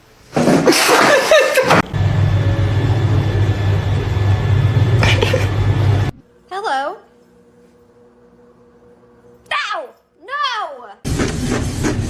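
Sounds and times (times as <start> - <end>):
loud noisy burst: 0.9 - 6.2
low mechanical hum: 1.5 - 12.0.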